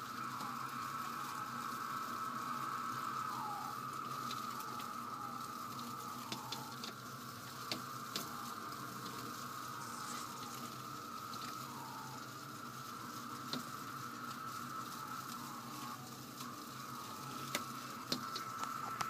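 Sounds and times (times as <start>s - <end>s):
cicadas droning buzz: 0.0s - 19.0s
sharp ticks: 3.2s - 11.6s.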